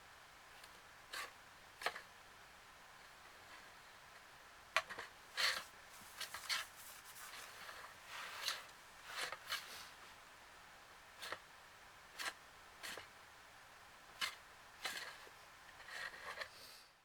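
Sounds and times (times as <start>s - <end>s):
scratchy rustles and light taps: 4.8s - 9.8s.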